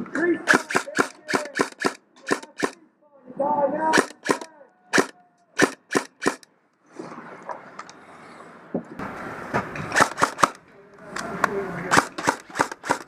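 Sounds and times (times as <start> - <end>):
airsoft gun shots: 0.5 - 2.8, 3.9 - 6.4, 9.9 - 10.6, 11.9 - 13.0.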